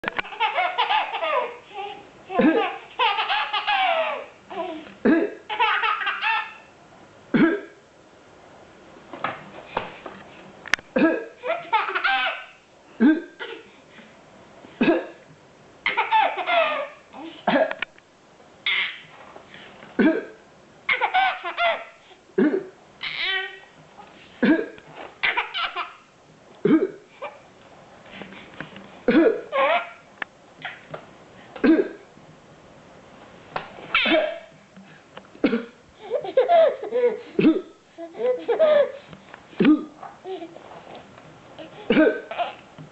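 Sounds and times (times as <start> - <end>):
baby laughing: 0.1 - 6.7, 11.2 - 13.7, 15.8 - 17.5, 18.6 - 19.1, 20.9 - 22.0, 23.0 - 23.7, 24.6 - 26.1, 29.1 - 30.9, 33.9 - 34.5, 36.0 - 39.1, 40.0 - 40.6, 41.6 - 42.7
person coughing: 5.0 - 5.4, 7.3 - 7.8, 11.0 - 11.4, 13.0 - 13.6, 14.8 - 15.2, 17.4 - 17.8, 20.0 - 20.4, 22.4 - 22.7, 24.4 - 24.8, 26.6 - 27.1, 29.1 - 29.5, 31.6 - 32.0, 35.4 - 35.8, 37.4 - 37.8, 39.6 - 40.0, 41.9 - 42.3.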